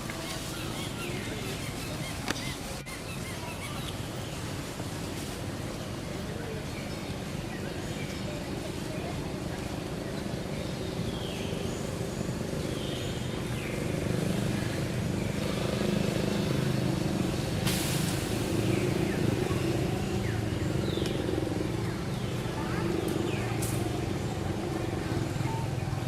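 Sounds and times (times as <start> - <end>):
vehicle engine running: 7.1 - 26.0
brief hiss: 17.6 - 18.5.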